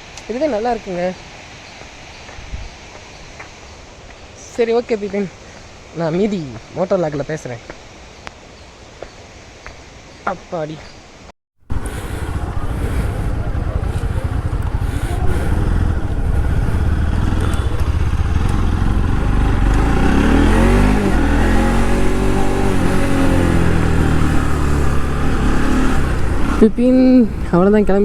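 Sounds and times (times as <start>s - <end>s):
road and wind noise: 0.0s - 28.0s
motorcycle engine: 11.7s - 27.8s.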